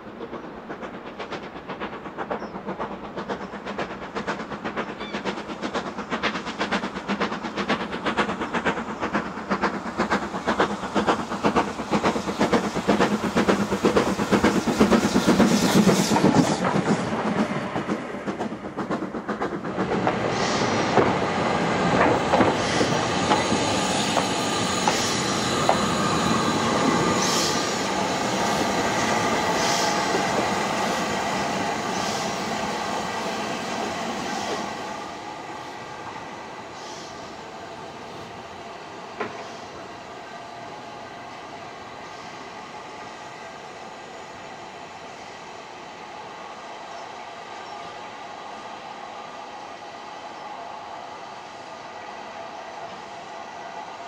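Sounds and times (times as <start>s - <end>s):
steam locomotive exhaust beats: 0.0s - 54.0s
train running steadily: 0.0s - 54.0s.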